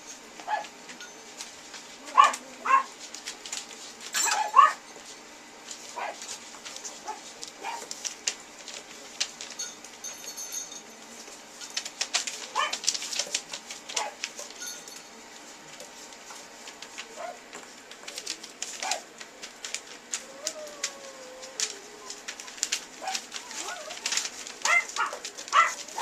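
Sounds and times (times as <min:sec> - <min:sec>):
puppies yelping and whining: 0:20.2 - 0:26.0.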